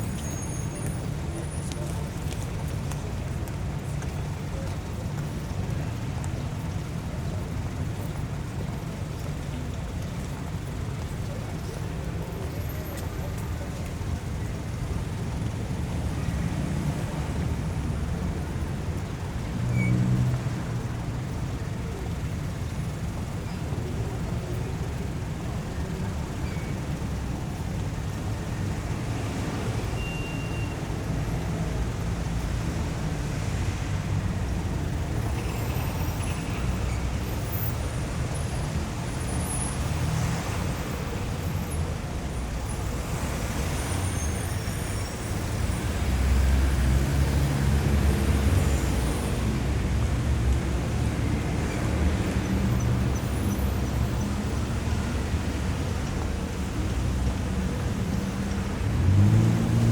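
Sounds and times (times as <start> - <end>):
tyres on asphalt: 0.0 - 59.9
vehicle engines: 0.0 - 59.9.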